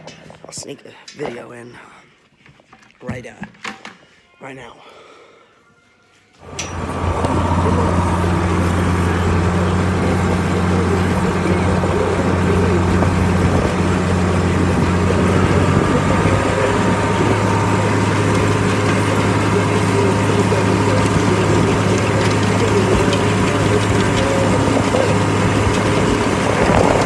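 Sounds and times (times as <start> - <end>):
tractor engine droning: 6.4 - 27.0.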